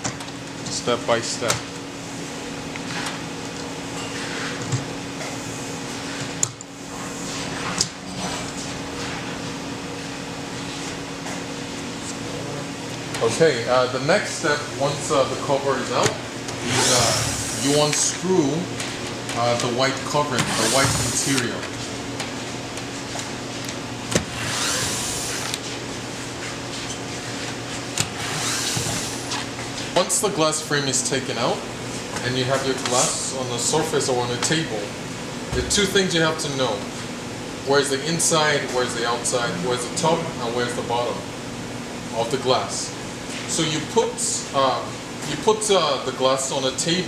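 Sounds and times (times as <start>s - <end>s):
steady hum: 0.0s - 47.0s
power screwdriver whirring: 16.6s - 17.7s, 20.4s - 21.4s, 24.2s - 25.6s, 28.2s - 29.3s.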